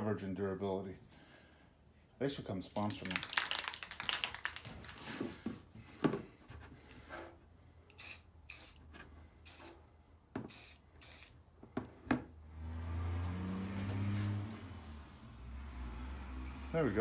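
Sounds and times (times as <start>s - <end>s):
spray can hissing: 2.9s - 4.7s, 8.0s - 8.8s, 10.5s - 11.3s.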